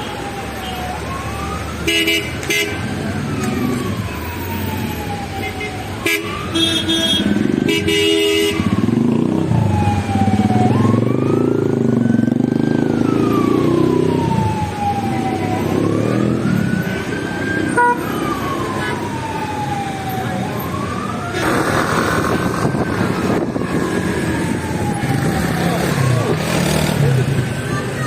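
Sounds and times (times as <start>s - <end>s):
emergency vehicle siren wailing: 0.0s - 28.0s
road traffic noise: 0.0s - 28.0s
car horn: 1.9s - 2.8s, 5.5s - 8.7s, 17.7s - 18.1s.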